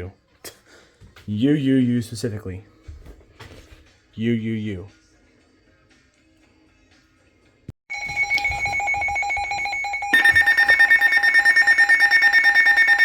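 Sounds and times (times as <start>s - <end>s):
beeping alarm: 7.9s - 13.0s
fast pulsing alarm beep: 7.9s - 13.0s.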